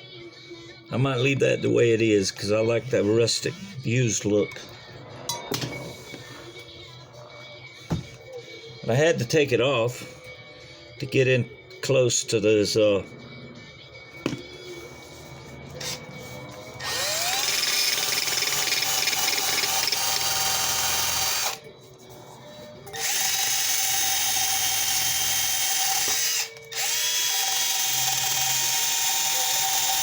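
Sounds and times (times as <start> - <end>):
electric drill whining: 14.6 - 21.6, 22.9 - 30.0.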